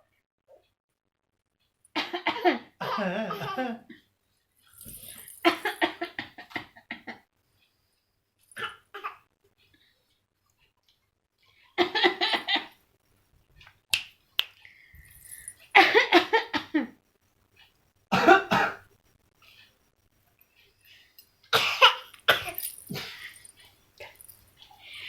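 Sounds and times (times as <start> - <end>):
baby fake coughing: 8.6 - 9.3, 21.6 - 23.3.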